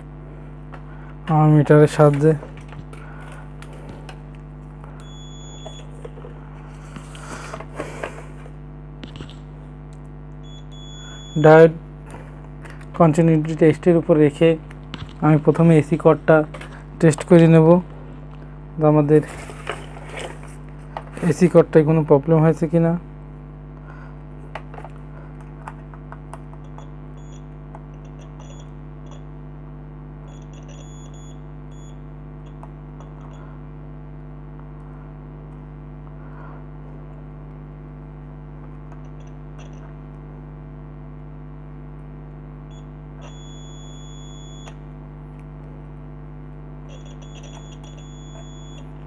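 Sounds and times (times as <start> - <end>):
low electrical hum: 0.0 - 49.0
multimeter continuity beeps: 4.9 - 6.0, 10.4 - 11.6, 26.6 - 29.3, 30.3 - 33.5, 42.7 - 44.8, 46.9 - 49.0.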